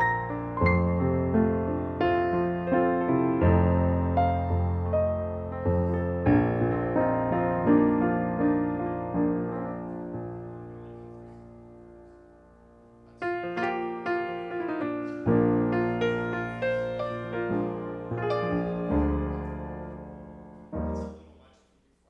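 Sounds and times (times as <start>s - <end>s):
solo piano chords: 0.0s - 21.5s.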